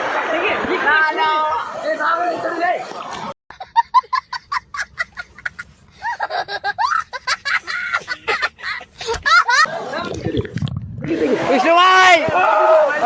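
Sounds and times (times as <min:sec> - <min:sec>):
person laughing: 0:03.6 - 0:09.7.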